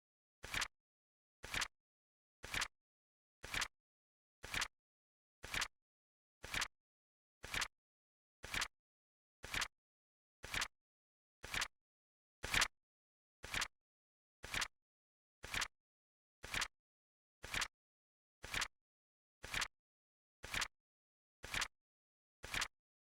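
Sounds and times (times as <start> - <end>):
flip clock flapping and clicking: 0.4 - 0.7, 1.4 - 1.7, 2.4 - 2.7, 3.4 - 3.7, 4.4 - 4.7, 5.4 - 5.7, 6.4 - 6.7, 7.4 - 7.7, 8.4 - 8.7, 9.4 - 9.7, 10.4 - 10.7, 11.4 - 11.7, 12.4 - 12.7, 13.4 - 13.7, 14.4 - 14.7, 15.4 - 15.7, 16.4 - 16.7, 17.4 - 17.7, 18.4 - 18.7, 19.4 - 19.7, 20.4 - 20.7, 21.4 - 21.7, 22.4 - 22.7.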